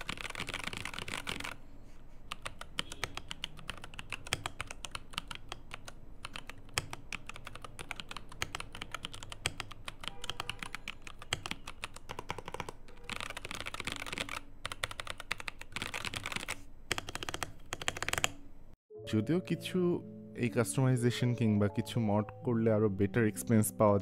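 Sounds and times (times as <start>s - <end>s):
mechanical keyboard typing: 0.0s - 1.6s, 2.2s - 18.4s.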